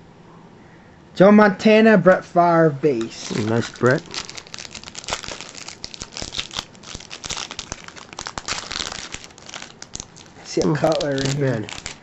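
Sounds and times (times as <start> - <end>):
plastic wrapper crinkling: 2.9 - 12.0.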